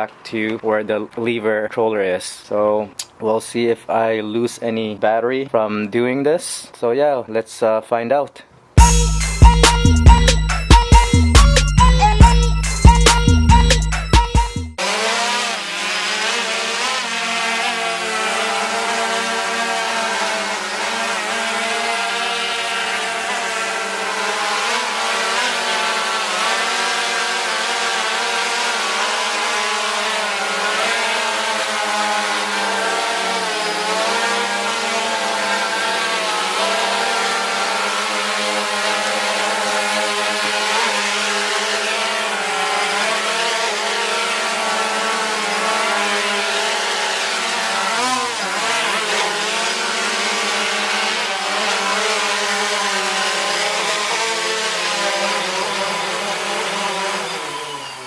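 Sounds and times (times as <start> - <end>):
drone propellers buzzing: 8.8 - 58.0.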